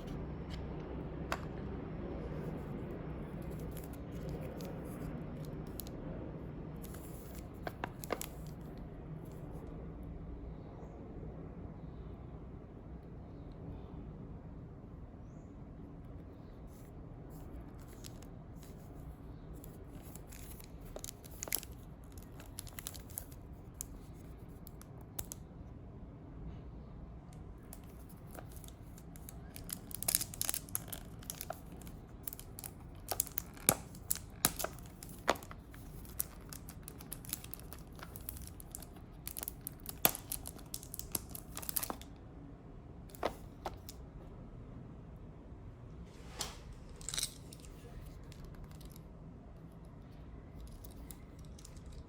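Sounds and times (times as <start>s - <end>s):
paper and plastic crinkling: 17.3s - 24.8s, 27.7s - 42.1s, 43.1s - 43.9s.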